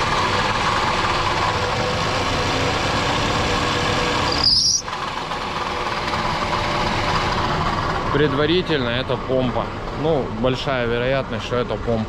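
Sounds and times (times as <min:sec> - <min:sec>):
car engine idling: 0:00.0 - 0:12.0
brief high squeak: 0:04.3 - 0:04.9.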